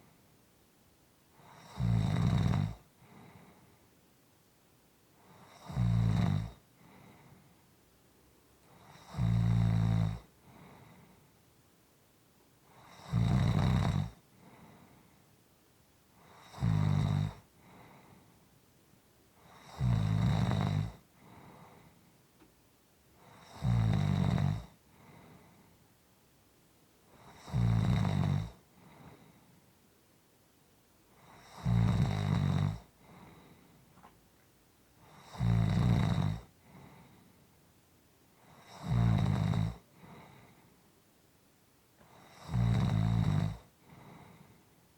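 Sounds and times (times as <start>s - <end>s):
person snoring: 1.4s - 2.9s, 5.3s - 7.3s, 8.8s - 11.1s, 12.7s - 14.8s, 16.2s - 18.1s, 19.4s - 21.9s, 23.2s - 25.2s, 27.2s - 29.3s, 31.2s - 33.6s, 35.0s - 37.2s, 38.4s - 40.6s, 42.1s - 44.6s
soft breathing: 2.9s - 4.0s, 6.7s - 7.8s, 10.4s - 11.5s, 14.3s - 15.4s, 17.5s - 18.6s, 21.1s - 22.4s, 24.7s - 26.0s, 28.6s - 29.8s, 32.8s - 34.3s, 36.4s - 37.6s, 39.8s - 41.0s, 43.6s - 44.9s.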